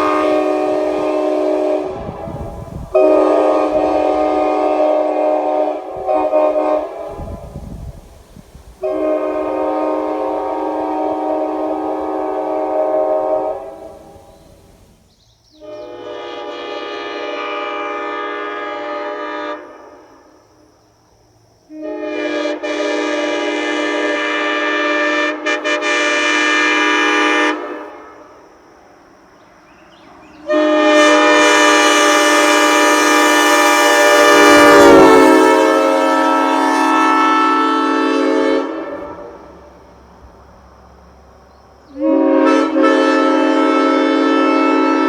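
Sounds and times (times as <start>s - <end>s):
air horn chord blasts: 0.0s - 7.5s, 8.8s - 14.9s, 21.7s - 28.2s, 30.4s - 39.5s, 41.9s - 45.0s.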